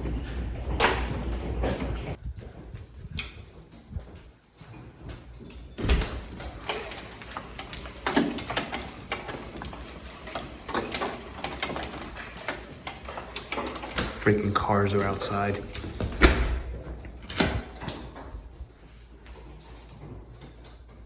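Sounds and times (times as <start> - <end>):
hail clattering on a house: 6.0 - 18.7.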